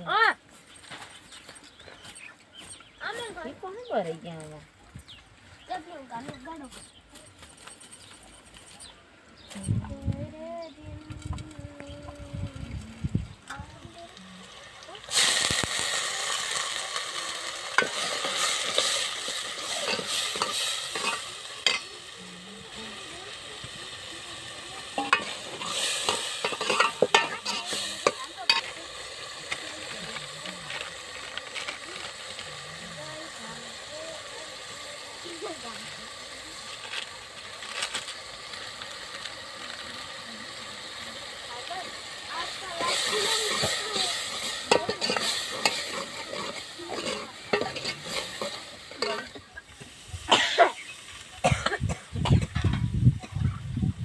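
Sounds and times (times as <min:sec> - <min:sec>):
food sizzling in a pan: 0:09.5 - 0:54.0
spoon scraping a pan: 0:17.8 - 0:22.0, 0:24.8 - 0:28.8, 0:42.5 - 0:49.9.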